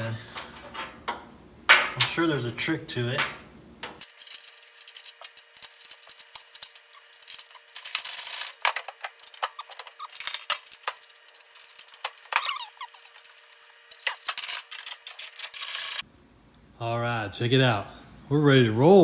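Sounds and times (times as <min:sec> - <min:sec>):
metal tools clinking and clattering: 0:04.0 - 0:16.0
short squeaks: 0:06.0 - 0:16.0.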